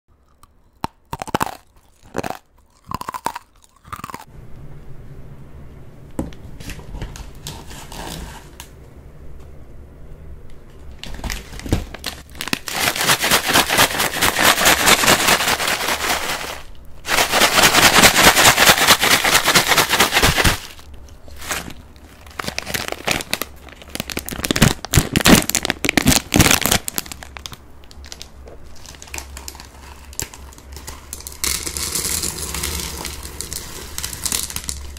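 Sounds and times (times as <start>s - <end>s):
plastic snack bag crinkling: 0.3s - 4.3s, 10.9s - 34.9s.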